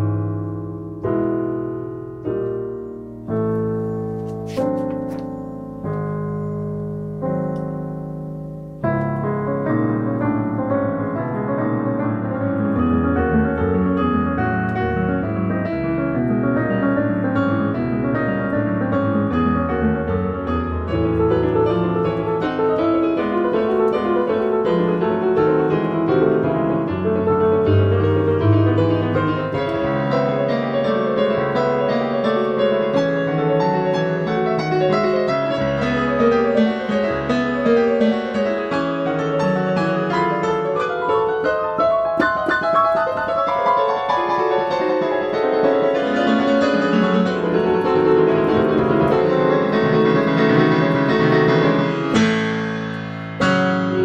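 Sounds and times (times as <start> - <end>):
digital piano chords and bass: 0.0 - 54.0.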